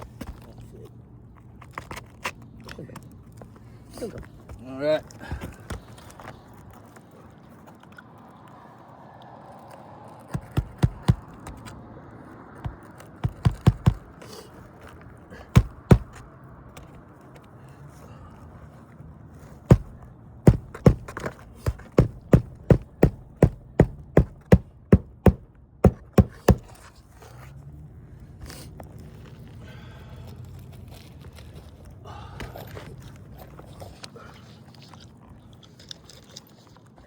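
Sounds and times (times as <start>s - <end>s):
hammer driving nails into shingles: 10.3s - 11.7s, 12.6s - 14.2s, 15.3s - 16.2s, 19.7s - 26.9s.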